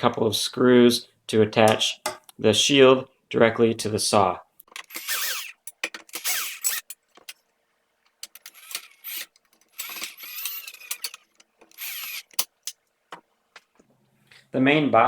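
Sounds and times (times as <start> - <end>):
power drill bursts: 4.7 - 7.3, 8.2 - 12.8.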